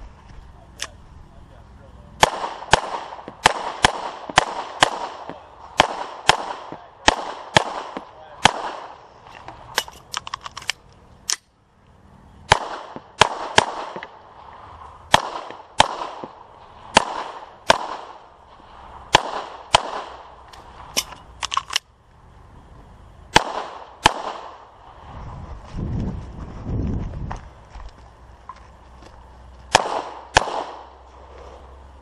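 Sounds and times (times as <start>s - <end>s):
pistol shots: 2.2s - 9.0s, 12.5s - 14.2s, 15.1s - 18.3s, 19.1s - 21.8s, 23.3s - 24.7s, 29.7s - 31.0s
low rumble: 14.0s - 32.0s.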